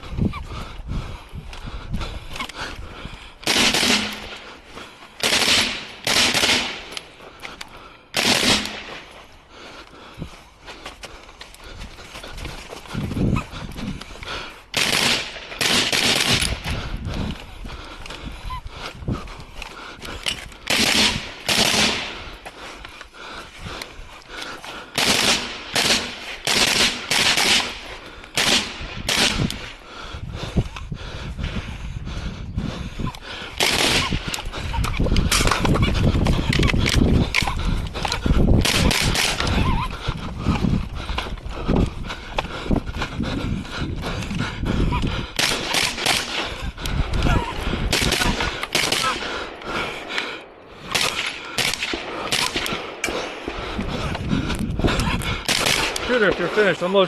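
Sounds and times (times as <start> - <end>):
rifle shots echoing: 3.4 - 4.5, 5.2 - 7.0, 8.2 - 9.1, 14.7 - 16.6, 20.7 - 22.2, 25.0 - 29.6, 33.6 - 34.3, 38.6 - 39.5, 47.9 - 49.6, 50.9 - 53.6, 55.5 - 56.8.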